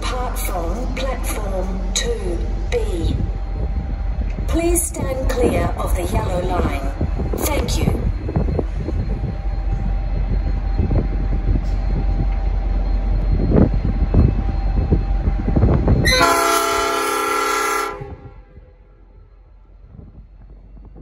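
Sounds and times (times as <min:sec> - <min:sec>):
diesel train rumbling: 0:00.0 - 0:21.0
train knocking: 0:00.0 - 0:21.0
locomotive air horn blast: 0:16.0 - 0:18.7.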